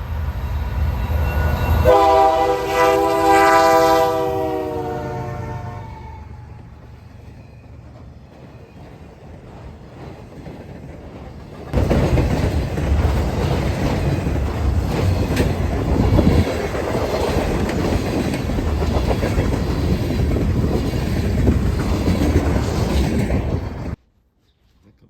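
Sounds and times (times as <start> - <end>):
train rumbling past: 0.0 - 24.0
wheels clicking over rail joints: 6.8 - 24.0.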